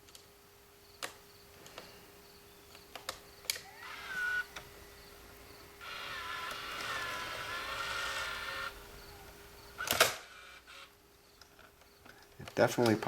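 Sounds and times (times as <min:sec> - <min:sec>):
small motor whirring: 0:03.4 - 0:11.0.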